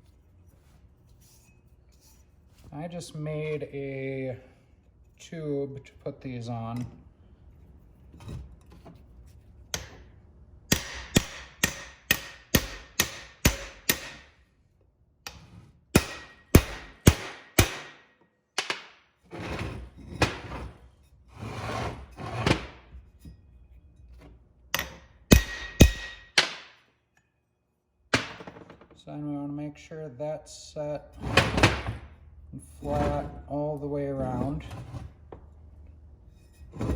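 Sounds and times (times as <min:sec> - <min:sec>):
hammer tapping on metal tube: 0:10.7 - 0:14.2, 0:24.8 - 0:26.6.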